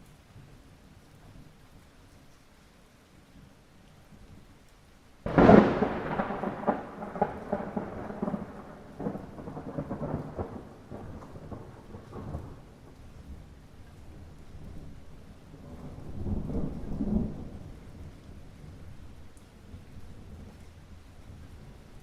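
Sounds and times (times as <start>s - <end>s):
light rain hissing: 0.0s - 22.0s
thunderclap rumbling: 5.2s - 13.0s, 15.5s - 18.8s.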